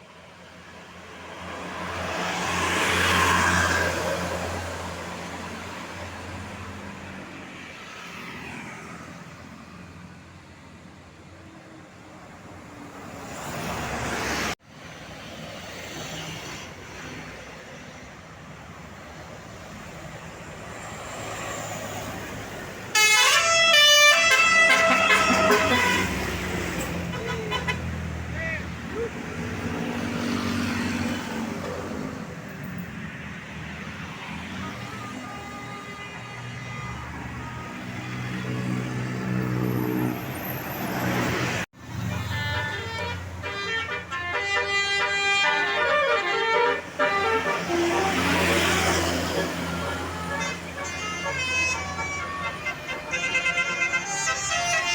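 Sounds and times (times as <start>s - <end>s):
steady traffic noise: 0.0s - 54.9s
road vehicle passing: 0.2s - 54.9s
vehicle passing close by: 1.2s - 9.3s, 27.7s - 32.8s, 45.7s - 54.9s.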